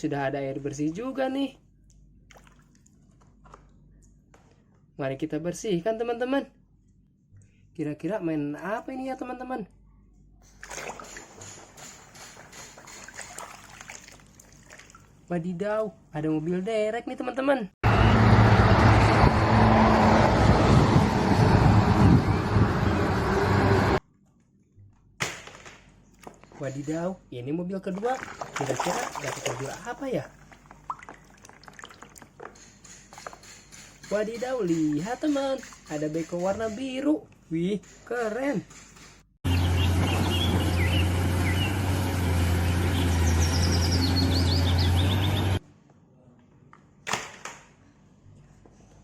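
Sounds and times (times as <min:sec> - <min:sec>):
vehicle engine rumbling: 0:17.8 - 0:24.0, 0:39.5 - 0:45.6
birds chirping: 0:39.5 - 0:42.0, 0:42.6 - 0:45.6.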